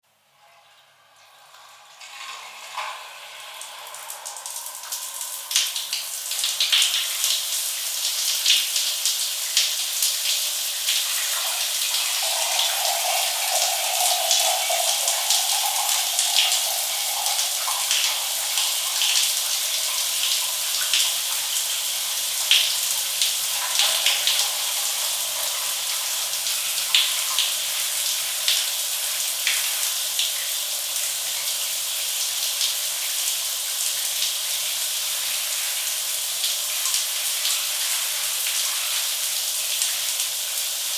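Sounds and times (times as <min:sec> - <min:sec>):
shower water spraying: 0:02.6 - 0:26.9.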